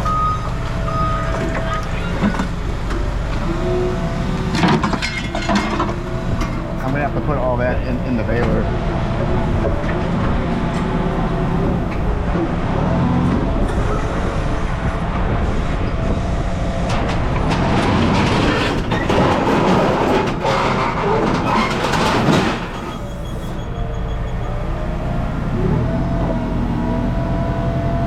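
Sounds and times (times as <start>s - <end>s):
heavy machinery rumbling and humming: 0.0s - 28.0s
scrap metal clattering: 16.9s - 23.4s.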